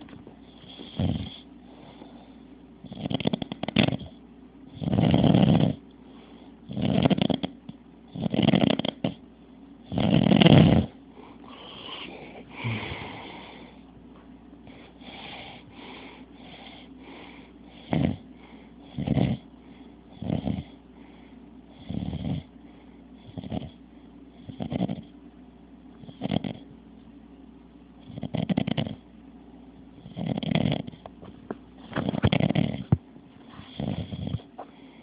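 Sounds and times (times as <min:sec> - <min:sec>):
man snoring: 0:00.7 - 0:01.5, 0:02.8 - 0:04.1, 0:04.7 - 0:05.8, 0:06.7 - 0:09.2, 0:09.9 - 0:13.8, 0:17.7 - 0:18.2, 0:18.9 - 0:19.5, 0:20.2 - 0:20.8, 0:21.8 - 0:22.5, 0:30.0 - 0:31.0, 0:32.3 - 0:33.0, 0:33.7 - 0:34.5.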